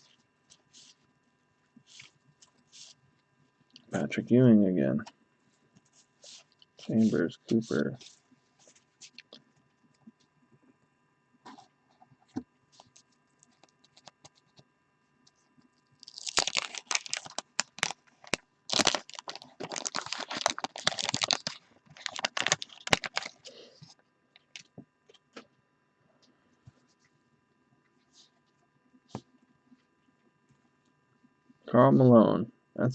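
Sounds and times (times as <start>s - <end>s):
wax wrapper crinkling: 12.8s - 14.6s, 15.8s - 24.8s.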